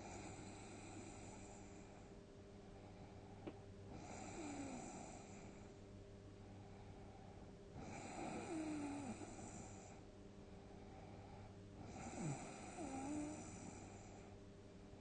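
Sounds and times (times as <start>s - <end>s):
person snoring: 3.9s - 5.4s, 7.8s - 9.9s, 11.8s - 14.0s.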